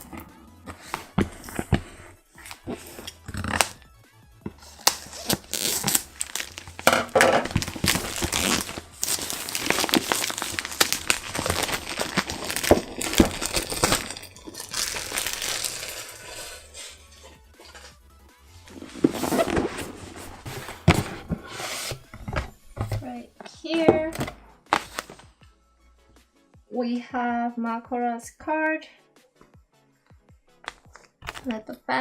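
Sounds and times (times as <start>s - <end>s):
background music: 0.0s - 32.0s
packaging crinkling: 2.4s - 3.8s, 4.6s - 17.0s, 24.7s - 25.2s
box unpacking clicks: 2.5s - 3.8s, 4.6s - 16.2s.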